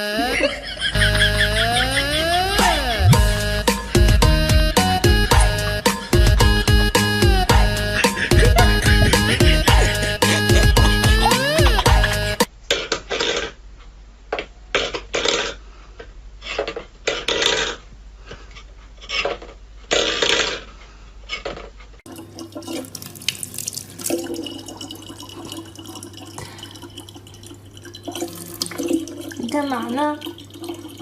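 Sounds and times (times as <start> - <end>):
low hum: 0.3 - 12.5
tap water splashing in sink: 22.1 - 26.6, 27.4 - 31.0.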